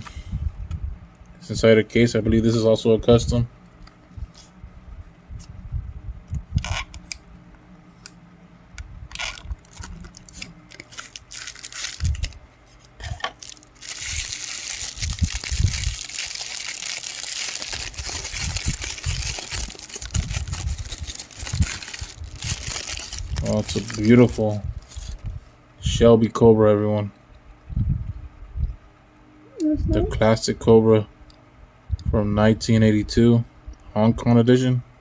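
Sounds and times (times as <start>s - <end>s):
packaging rustling and crinkling: 9.1s - 25.2s.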